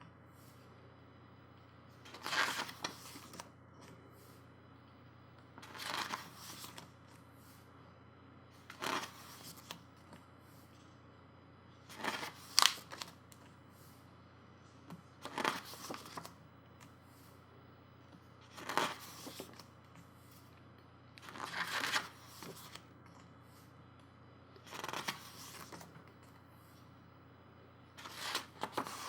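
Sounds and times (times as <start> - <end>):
book pages turning: 2.1 - 3.5, 5.6 - 6.9, 8.7 - 9.8, 11.9 - 13.2, 15.2 - 16.4, 18.4 - 19.7, 21.2 - 22.8, 24.6 - 26.1, 28.0 - 29.0
sharp paper snap: 12.5 - 13.1.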